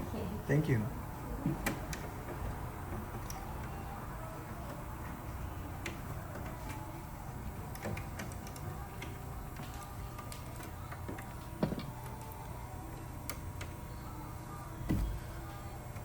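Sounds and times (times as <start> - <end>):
low background hum: 0.0 - 16.0.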